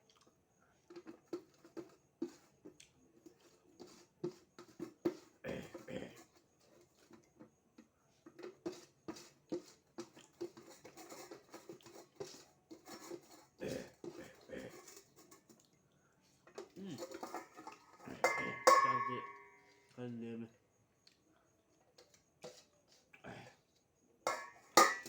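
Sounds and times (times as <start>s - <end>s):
person chewing and smacking food: 0.0s - 0.4s.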